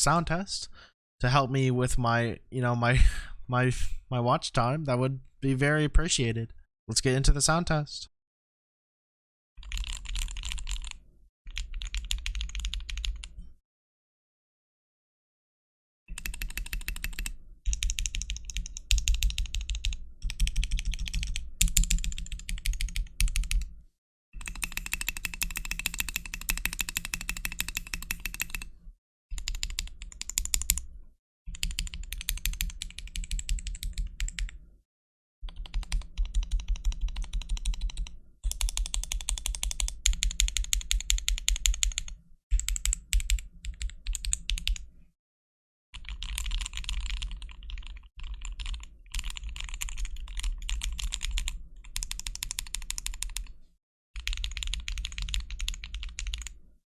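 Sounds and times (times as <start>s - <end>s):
mechanical keyboard typing: 9.6s - 13.3s, 16.1s - 23.7s, 24.4s - 28.7s, 29.4s - 30.8s, 31.5s - 34.6s, 35.5s - 44.8s, 46.0s - 53.5s, 54.2s - 56.6s.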